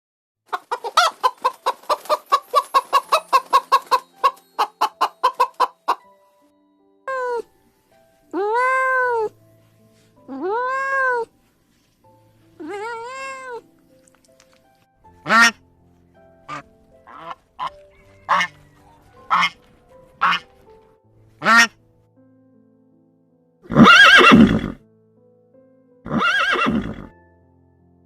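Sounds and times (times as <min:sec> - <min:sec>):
chicken clucking rapidly: 0:00.5 - 0:06.0, 0:15.3 - 0:15.6, 0:16.5 - 0:20.6, 0:21.4 - 0:21.7
cat meowing: 0:08.4 - 0:09.3, 0:10.3 - 0:11.3, 0:12.6 - 0:13.6.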